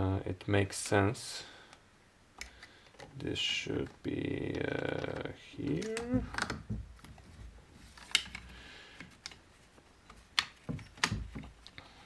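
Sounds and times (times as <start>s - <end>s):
hard plastic parts clicking: 2.4s - 9.4s, 10.1s - 11.9s.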